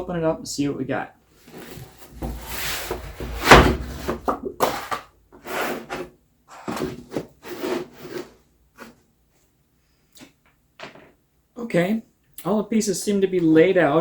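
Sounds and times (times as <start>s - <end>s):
wooden parts scraping and knocking: 1.5s - 8.2s.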